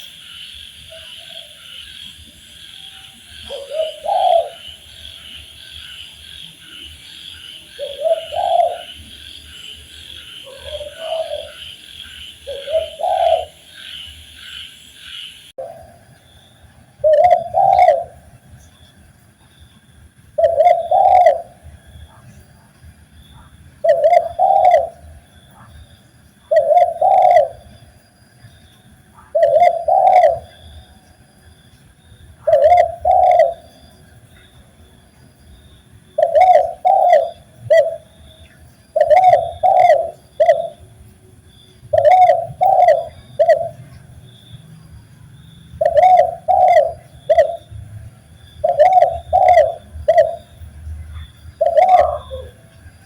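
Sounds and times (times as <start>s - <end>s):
dove cooing: 0.0s - 16.1s, 17.0s - 18.4s, 20.4s - 22.4s, 23.4s - 25.8s, 26.5s - 27.7s, 29.2s - 31.0s, 32.4s - 34.0s, 36.1s - 41.0s, 41.8s - 44.5s, 45.7s - 52.8s.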